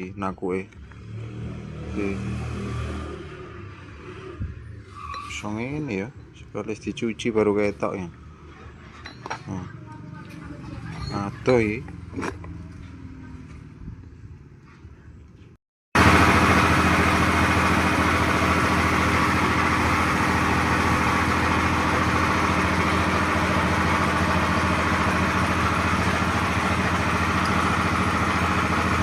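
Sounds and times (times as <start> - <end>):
faint clinking: 8.8 - 9.6
diesel truck engine idling: 16.0 - 29.0.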